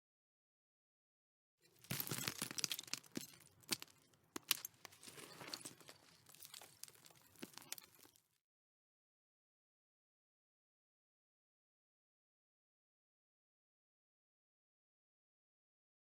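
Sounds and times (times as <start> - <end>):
gravel and stones tumbling: 1.7 - 8.3.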